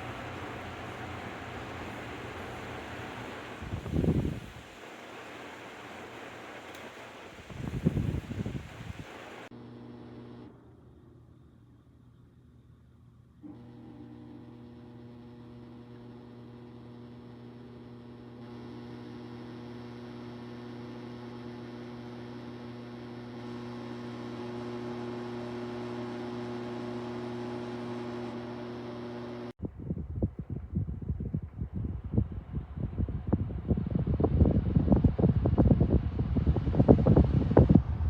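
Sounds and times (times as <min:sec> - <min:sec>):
wind buffeting microphone: 0:00.0 - 0:04.7, 0:07.4 - 0:09.2, 0:29.6 - 0:38.0
fan motor hum and airflow: 0:00.0 - 0:38.0.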